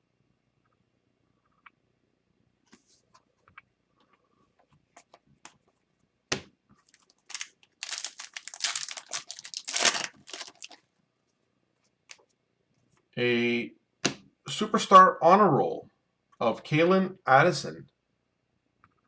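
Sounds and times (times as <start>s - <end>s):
foil wrapper tearing and crinkling: 6.8s - 10.8s.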